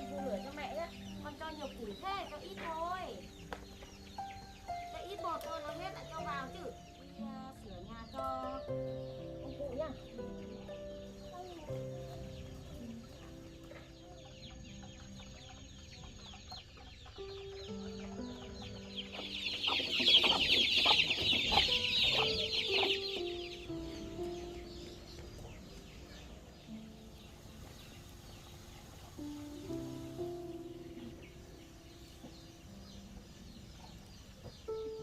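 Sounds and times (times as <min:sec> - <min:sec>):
soft background music: 0:00.0 - 0:35.0
chicken calls: 0:08.0 - 0:35.0.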